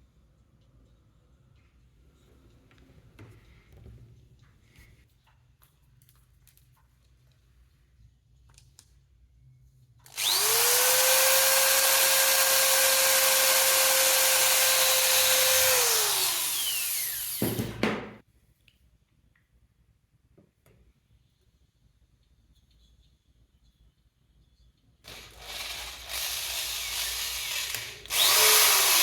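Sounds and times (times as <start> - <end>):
electric drill whining: 10.1 - 17.8, 25.1 - 29.0.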